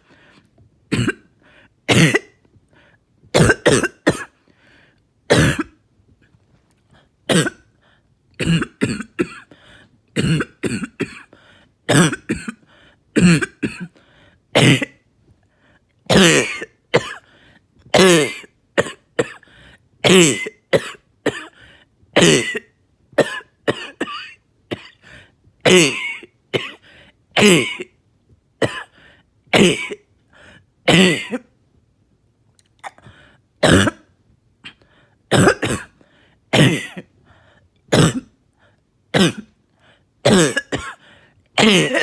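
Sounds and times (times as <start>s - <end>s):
person coughing: 0.9s - 1.3s, 1.9s - 2.4s, 3.3s - 4.4s, 5.3s - 5.8s, 7.3s - 7.7s, 8.4s - 9.6s, 10.2s - 11.3s, 11.9s - 14.0s, 14.6s - 15.0s, 16.1s - 17.3s, 17.9s - 19.4s, 20.0s - 21.6s, 22.2s - 26.8s, 27.4s - 28.0s, 28.6s - 30.1s, 30.9s - 31.5s, 32.8s - 37.1s, 37.9s - 38.4s, 39.2s - 39.6s, 40.2s - 42.0s.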